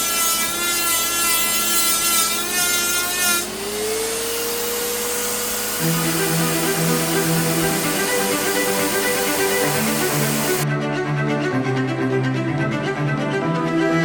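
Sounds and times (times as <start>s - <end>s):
power tool whining on wood: 0.0s - 10.6s
steady tones: 2.0s - 10.6s
pulsing musical notes: 5.7s - 14.0s.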